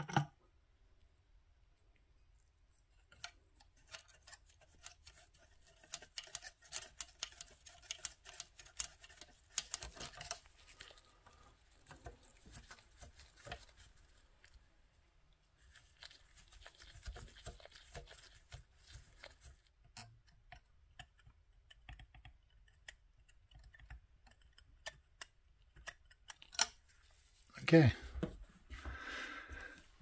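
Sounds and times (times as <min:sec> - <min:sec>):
small clicks and taps of handling: 0:02.9 - 0:14.6, 0:15.6 - 0:27.3.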